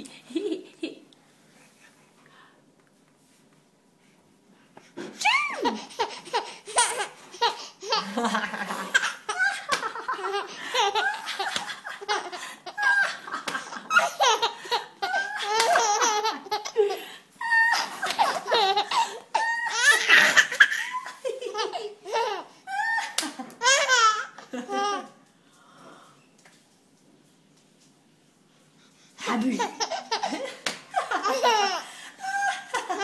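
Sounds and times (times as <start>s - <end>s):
baby girl laughing: 5.2s - 25.2s, 29.3s - 33.0s.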